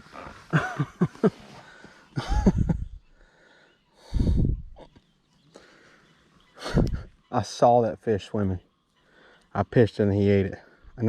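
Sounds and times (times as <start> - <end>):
man breathing heavily: 1.4 - 2.2, 3.1 - 4.8, 5.5 - 7.1
wind buffeting microphone: 2.4 - 3.1, 4.1 - 4.8, 6.6 - 7.1.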